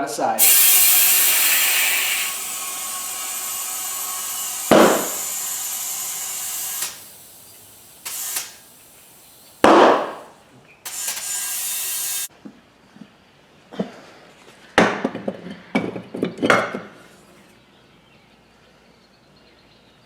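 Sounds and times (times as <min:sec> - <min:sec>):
compressed air hissing: 0:00.4 - 0:10.3, 0:10.9 - 0:12.3
tire bead popping bang: 0:00.4 - 0:10.3.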